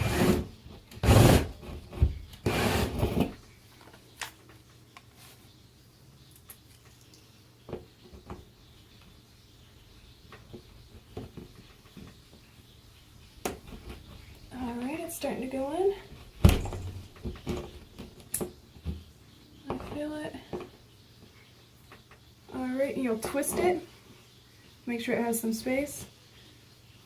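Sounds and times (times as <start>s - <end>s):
rotary tool grinding drywall: 0.0s - 3.4s.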